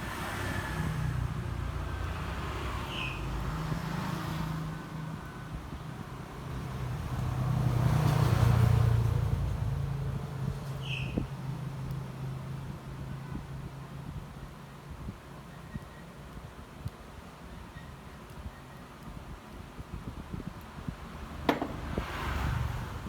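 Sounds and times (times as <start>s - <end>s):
vehicle engine passing by: 0.0s - 4.8s, 6.5s - 10.0s, 21.2s - 23.0s.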